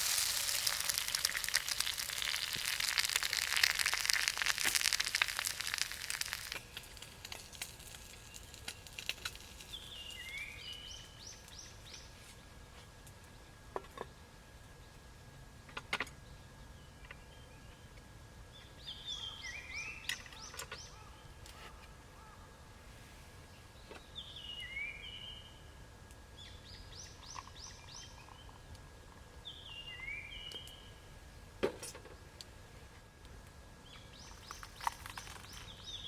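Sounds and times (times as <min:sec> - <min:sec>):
campfire pops: 0:00.0 - 0:11.6.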